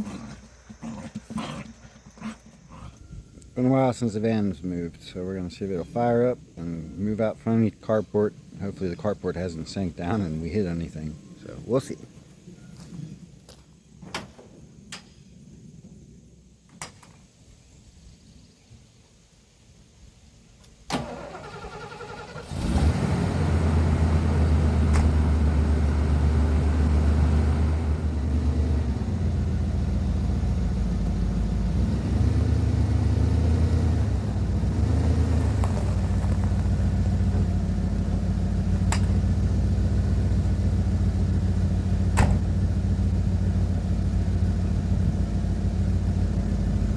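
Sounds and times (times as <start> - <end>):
engine starter cranking: 20.9 - 23.2
van engine idling: 21.0 - 46.9.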